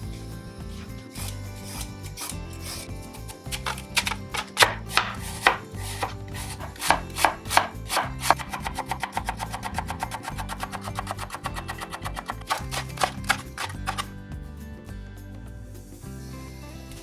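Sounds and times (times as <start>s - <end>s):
knife chopping on cutting board: 3.5s - 14.0s.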